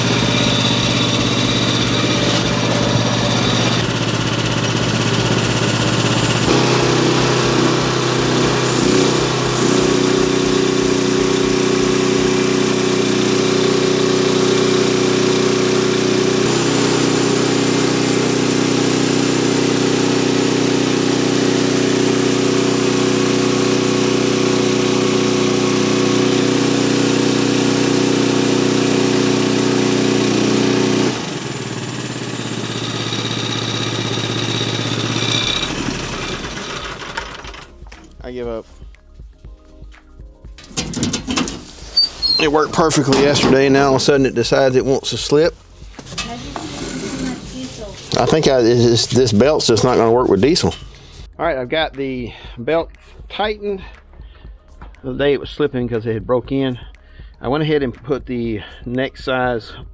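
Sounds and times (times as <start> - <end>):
strong steady hum: 0.0 - 18.6
saw blade cutting: 0.0 - 37.7, 41.3 - 44.2, 45.9 - 48.7
small diesel engine running: 0.0 - 38.1, 40.6 - 51.3.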